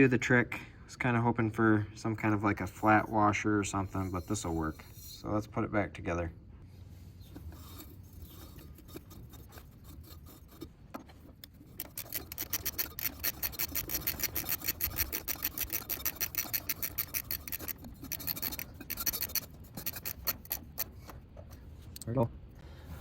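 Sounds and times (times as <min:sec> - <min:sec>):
ratchet wrench clicking: 0:11.8 - 0:20.9.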